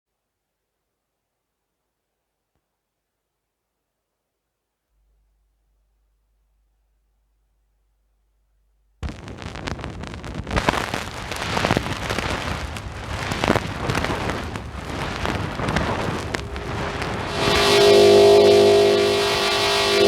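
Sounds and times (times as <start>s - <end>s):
record crackle and pops: 9.0s - 20.0s.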